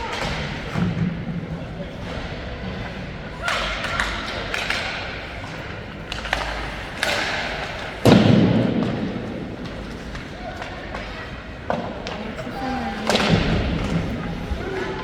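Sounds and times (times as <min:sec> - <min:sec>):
hockey sticks and puck striking: 0:00.0 - 0:01.3, 0:03.4 - 0:14.2
puck hitting the boards: 0:03.4 - 0:14.3.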